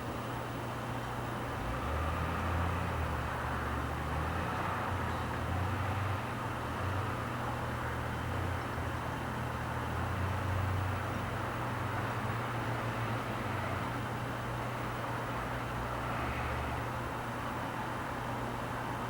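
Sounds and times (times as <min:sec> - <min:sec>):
traffic drone on a bridge: 0:00.0 - 0:19.0.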